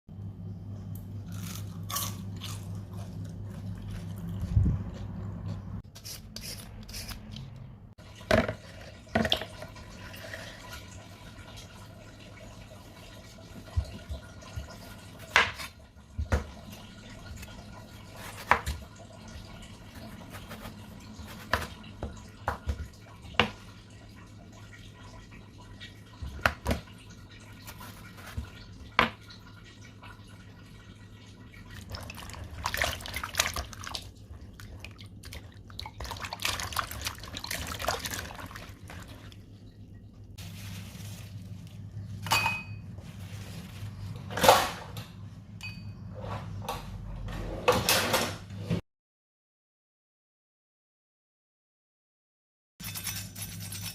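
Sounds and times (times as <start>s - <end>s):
water dripping and splashing: 20.9s - 41.3s
kitchen knocks and clinks: 42.2s - 42.9s.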